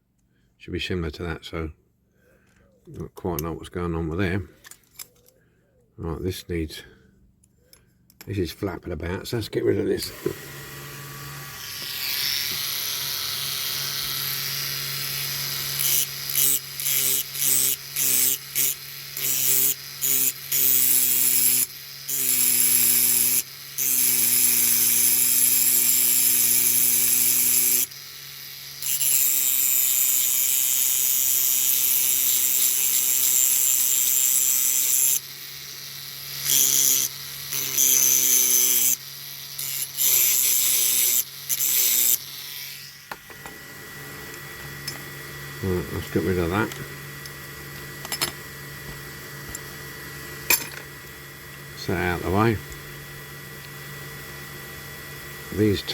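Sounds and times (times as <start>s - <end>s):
rotary tool running in bursts: 9.9s - 44.0s.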